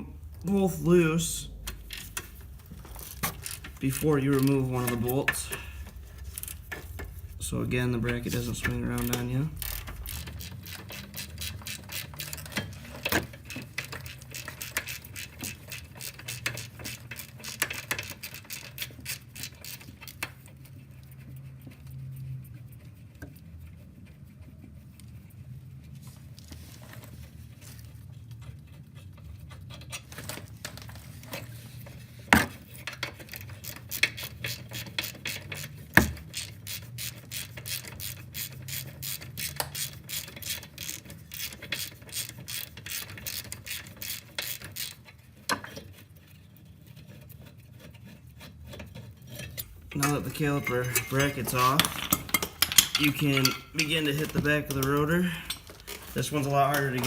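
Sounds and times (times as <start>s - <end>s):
ratchet wrench clicking: 1.7s - 7.3s, 8.1s - 20.2s, 33.4s - 45.1s.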